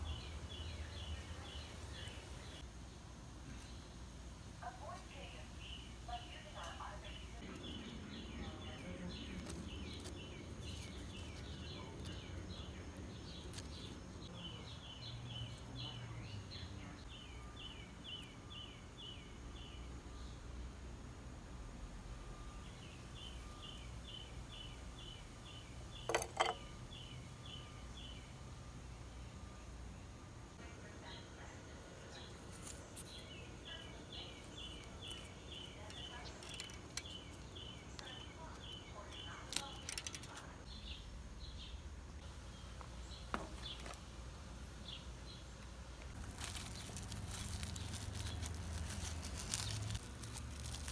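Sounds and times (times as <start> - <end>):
small bird chirping: 4.8 - 19.8, 32.0 - 41.8, 44.8 - 50.9.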